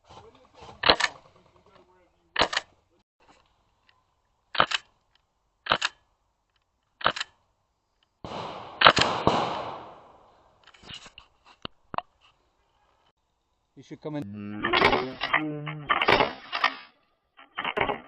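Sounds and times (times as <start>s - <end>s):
airsoft gun shots: 8.2s - 10.1s, 15.9s - 16.8s.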